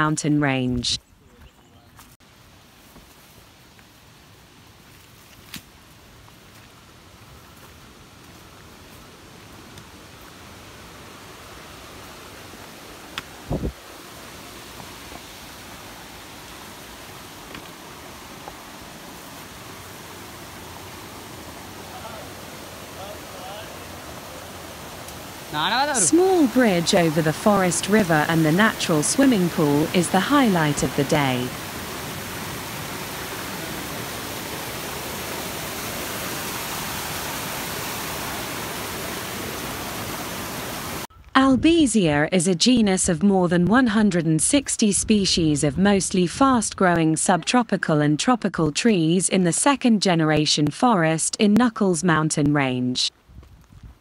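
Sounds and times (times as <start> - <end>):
river rushing: 8.1 - 41.1.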